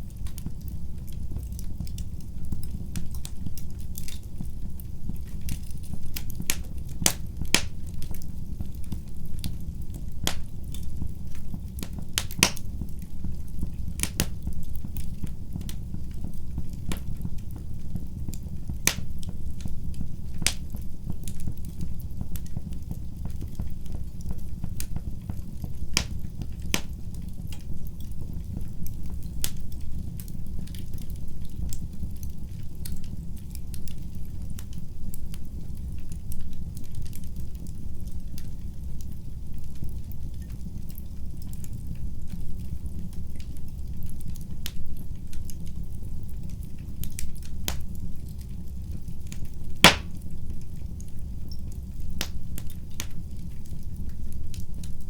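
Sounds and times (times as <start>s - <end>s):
fire rumbling: 0.0s - 55.0s
logs crackling and popping: 0.0s - 55.0s.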